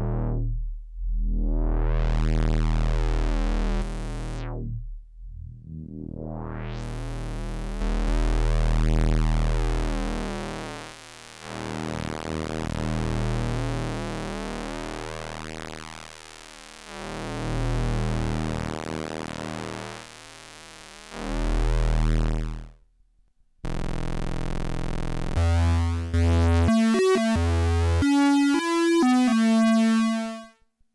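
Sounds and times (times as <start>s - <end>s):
buzzy synthesizer bass tone: 0.0s - 10.5s, 23.7s - 30.6s
synthesizer notes stepping between pitches: 23.7s - 30.5s.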